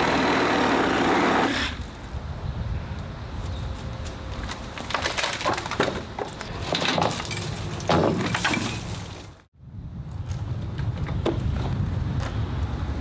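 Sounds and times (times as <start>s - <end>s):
wooden boards cracking and splintering: 4.5s - 9.3s.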